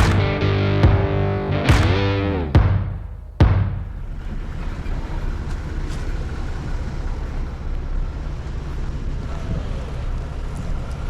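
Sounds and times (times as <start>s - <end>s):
single sharp hit: 0.0s - 4.0s
vehicle engine and tyres rumbling: 0.0s - 11.0s.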